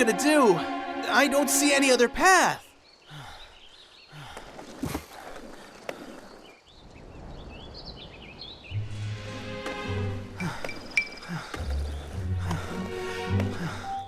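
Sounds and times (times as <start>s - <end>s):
music: 0.0s - 2.4s, 8.8s - 10.8s, 11.6s - 14.0s.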